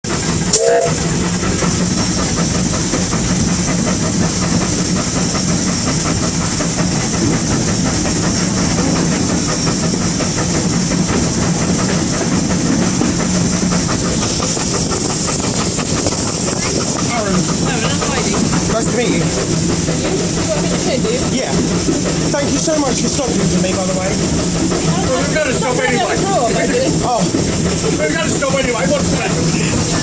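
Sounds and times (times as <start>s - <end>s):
steam hissing and rumbling: 0.0s - 30.0s
running gear clattering on rails: 0.1s - 30.0s
low hum: 0.4s - 1.4s.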